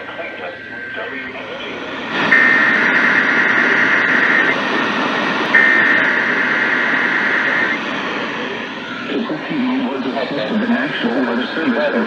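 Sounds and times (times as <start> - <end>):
radio static: 0.0 - 12.0
warbling two-tone data buzz: 5.6 - 7.8.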